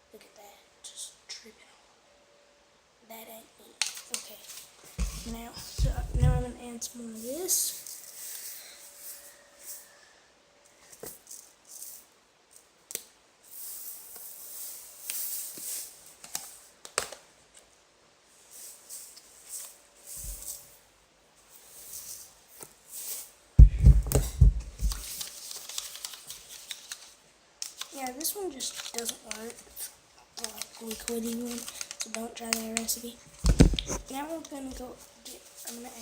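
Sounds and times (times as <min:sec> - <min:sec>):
heavy knocking and bumping: 0:05.0 - 0:06.6
salt rattling from a shaker: 0:07.1 - 0:09.9, 0:11.0 - 0:12.7, 0:13.4 - 0:16.6, 0:21.5 - 0:23.4, 0:24.8 - 0:32.8.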